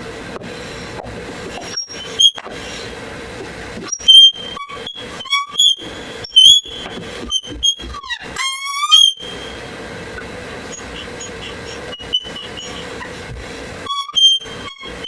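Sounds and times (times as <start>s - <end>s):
steady low hum: 0.0s - 7.4s, 9.2s - 13.8s
stool squeaking: 3.9s - 9.6s, 10.7s - 13.2s, 13.8s - 15.0s.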